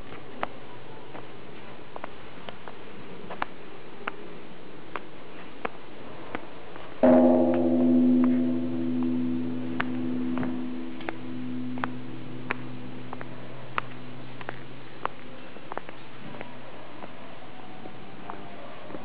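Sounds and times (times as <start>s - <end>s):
temple bell strike and ring: 7.0s - 15.6s.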